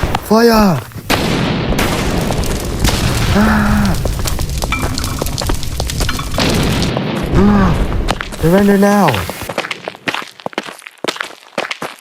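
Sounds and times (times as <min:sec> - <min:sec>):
explosions booming: 0:00.0 - 0:09.5
gunfire cracking: 0:01.0 - 0:09.5
person shouting: 0:03.3 - 0:04.0.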